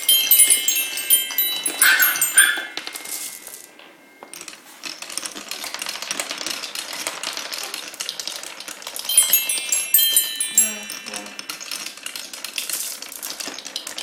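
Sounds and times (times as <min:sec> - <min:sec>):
chime-like tones: 0:00.0 - 0:04.6, 0:09.1 - 0:12.2
marbles rolling and clicking: 0:00.0 - 0:14.0.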